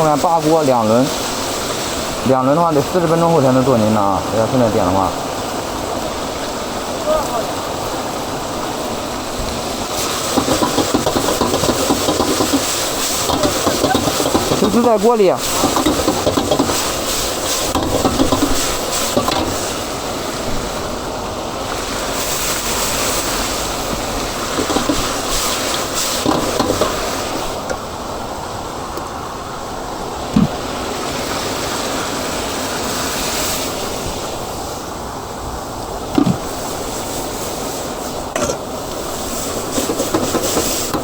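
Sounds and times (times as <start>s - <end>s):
chicken sizzling in a wok: 9.9s - 20.0s.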